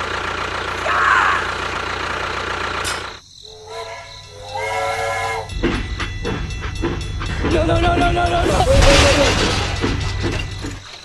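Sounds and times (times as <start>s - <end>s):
engine drone: 0.0s - 7.7s
horn-like tones: 3.4s - 5.6s.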